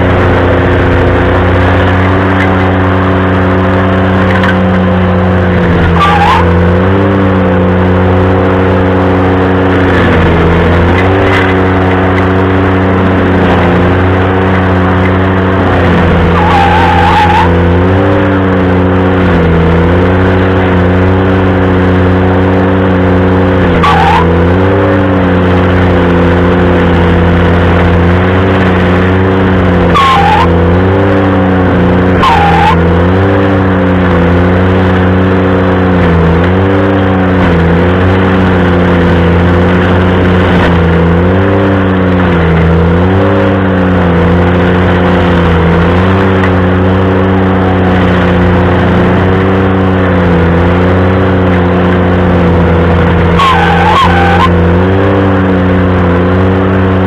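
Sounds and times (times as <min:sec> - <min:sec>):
tractor engine running stump grinder: 0:00.0 - 0:57.0
short squeals: 0:03.7 - 0:07.3, 0:13.3 - 0:18.3, 0:23.6 - 0:25.1, 0:29.2 - 0:33.6, 0:52.6 - 0:54.8.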